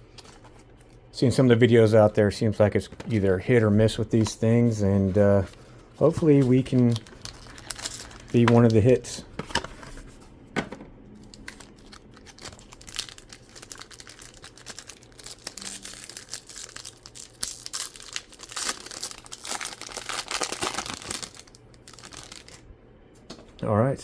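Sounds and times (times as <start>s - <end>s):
plastic wrapping crinkling and tearing: 4.1s - 10.1s, 11.2s - 22.7s.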